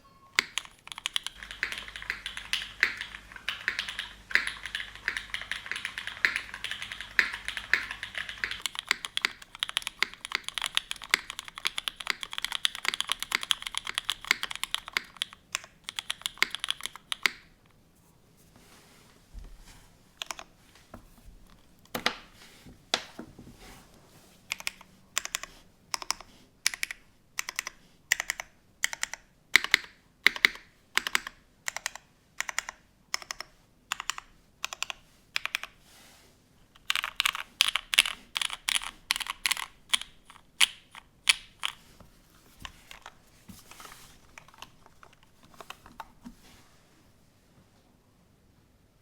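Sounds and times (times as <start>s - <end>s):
mechanical keyboard typing: 0.3s - 17.6s, 20.2s - 20.5s, 24.5s - 35.8s, 36.8s - 41.8s, 42.6s - 46.3s.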